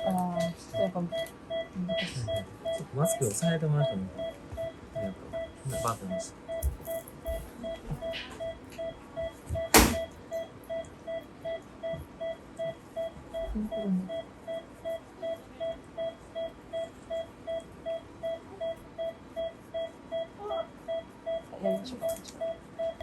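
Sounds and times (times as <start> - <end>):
patient monitor beeping: 0.0 - 23.0
sharp knock: 9.7 - 10.1.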